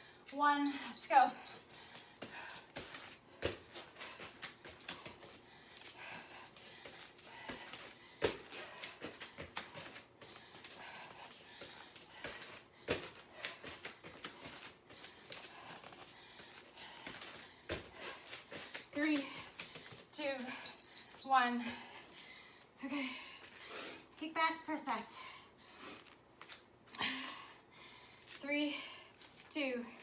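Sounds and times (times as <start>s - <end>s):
hard breathing: 1.6s - 20.7s, 21.6s - 24.2s, 24.9s - 26.2s.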